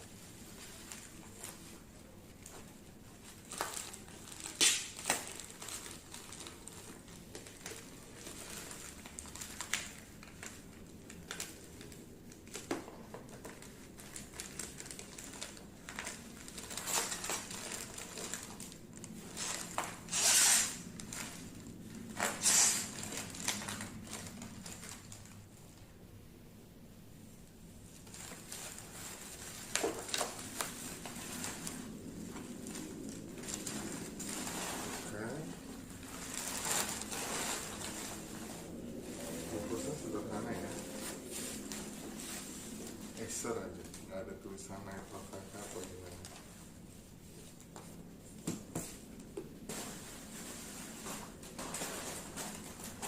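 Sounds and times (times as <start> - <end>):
packaging crinkling rustles: 0.0 - 25.9, 27.8 - 53.0
scraping rustles: 28.0 - 49.1, 49.7 - 53.0.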